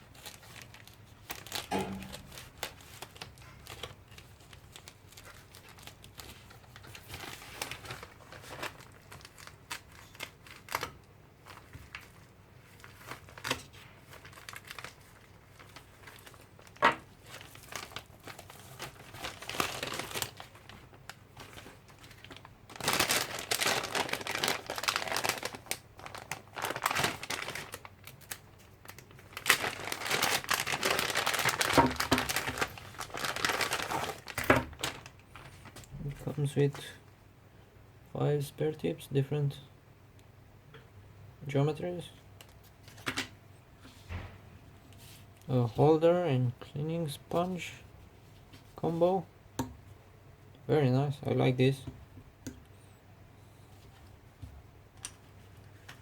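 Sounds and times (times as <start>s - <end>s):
package wrapping crinkling and tearing: 0.0s - 36.1s.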